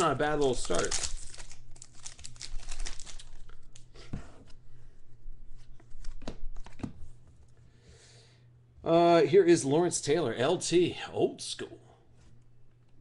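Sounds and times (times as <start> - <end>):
foil wrappers crinkling and tearing: 0.0 - 3.8.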